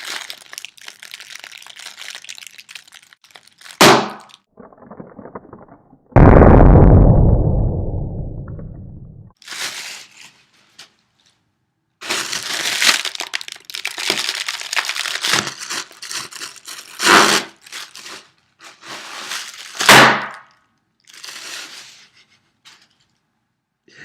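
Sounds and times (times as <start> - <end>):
plastic packing pillows crinkling: 0.0 - 4.4, 12.0 - 19.9.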